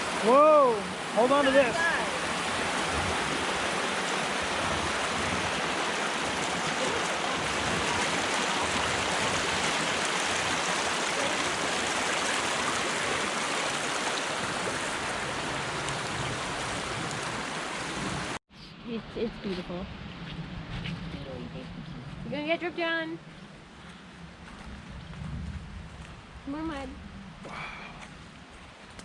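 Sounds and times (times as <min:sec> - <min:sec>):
stream water rushing: 0:00.0 - 0:18.4.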